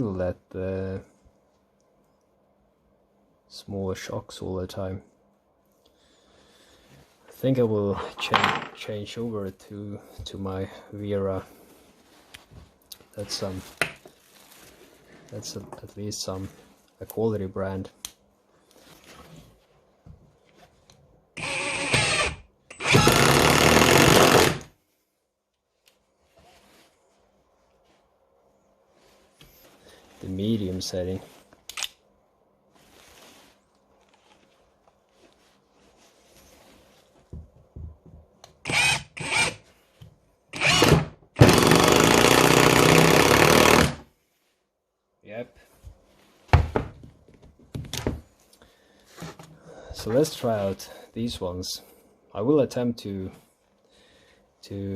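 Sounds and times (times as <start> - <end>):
impact driver rapid hammering: 21.4 - 24.7, 40.6 - 44.0
impact driver running: 21.4 - 24.7, 38.7 - 39.6, 40.6 - 44.0.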